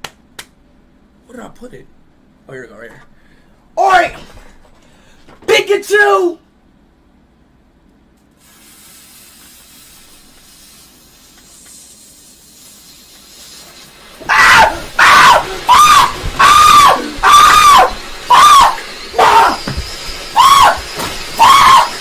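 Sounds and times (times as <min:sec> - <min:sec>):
man screaming: 0:03.8 - 0:04.3, 0:14.3 - 0:22.0
firework rushing spray: 0:08.3 - 0:22.0
fuse hissing: 0:08.3 - 0:22.0.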